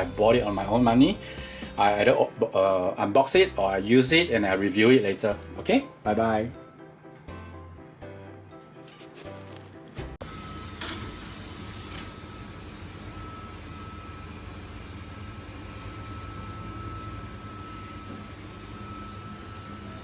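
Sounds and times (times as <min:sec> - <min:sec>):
mechanical hum: 0:10.1 - 0:20.0.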